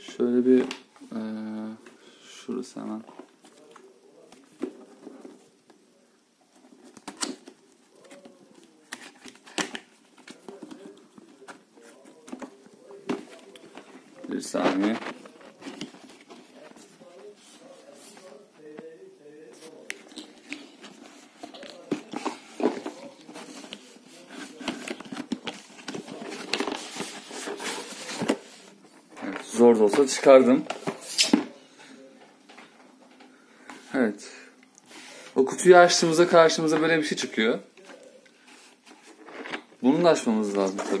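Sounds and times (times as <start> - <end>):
cardboard box rustling and scraping: 20.9 - 28.7.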